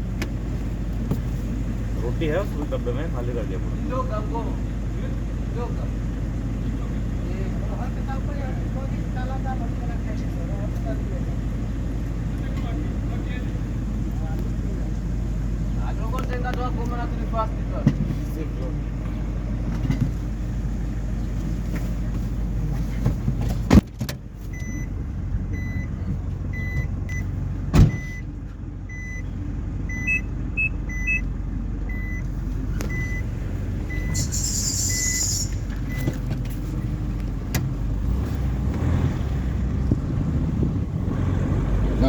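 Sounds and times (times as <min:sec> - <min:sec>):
car rumbling on the move: 0:00.0 - 0:42.0
short high electronic beeps: 0:33.9 - 0:36.0
brief hiss: 0:34.1 - 0:35.7.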